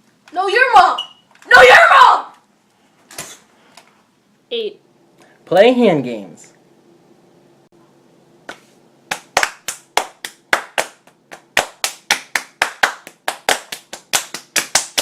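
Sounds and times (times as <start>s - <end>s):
hand claps and slaps: 8.4s - 15.0s.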